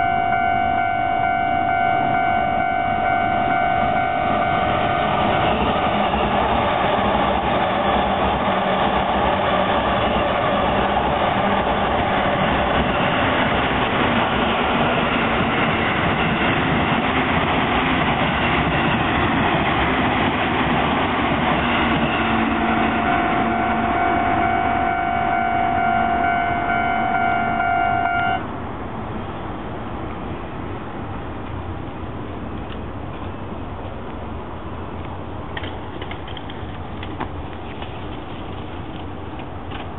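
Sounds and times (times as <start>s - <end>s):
crossing warning bell ringing: 0.0s - 5.8s, 21.6s - 28.5s
train rushing rumble: 0.0s - 39.9s.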